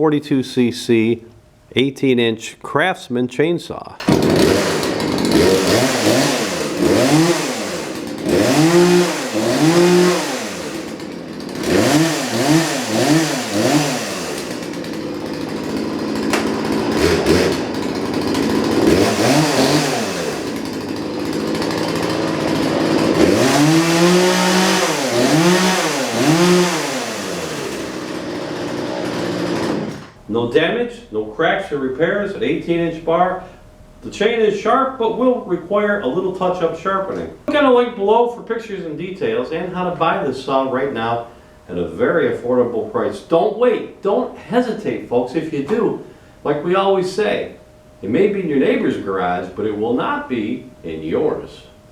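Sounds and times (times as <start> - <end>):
chainsaw revving and idling: 4.0 - 30.2.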